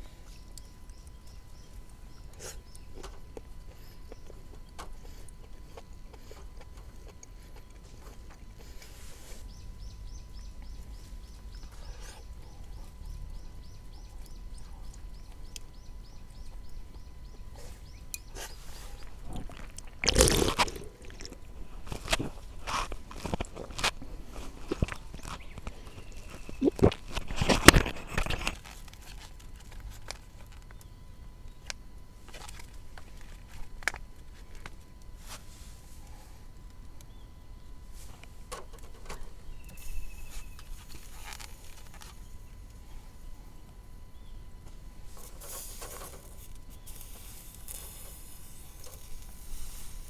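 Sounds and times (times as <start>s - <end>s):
crunches clicks and crinkling: 19.0s - 30.8s.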